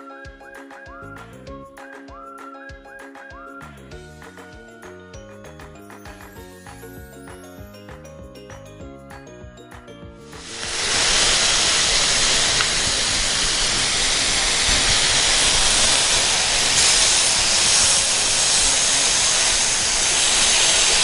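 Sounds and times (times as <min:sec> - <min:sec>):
skewers sizzling in oil: 0:10.3 - 0:21.0.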